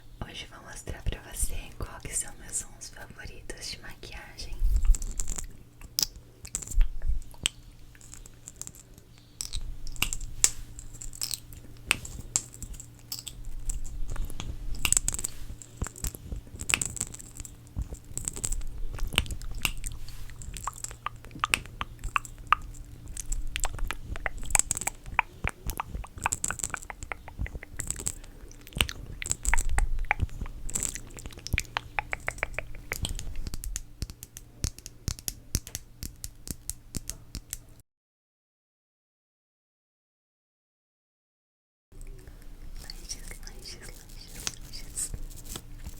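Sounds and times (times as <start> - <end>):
makeup products tapping and clicking: 31.4 - 35.8.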